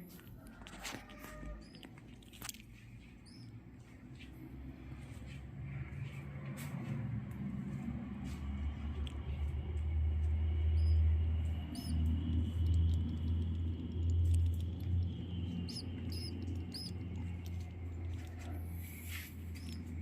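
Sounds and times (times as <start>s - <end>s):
steady low hum: 1.5s - 20.0s
swiftlets chirping: 10.7s - 18.1s.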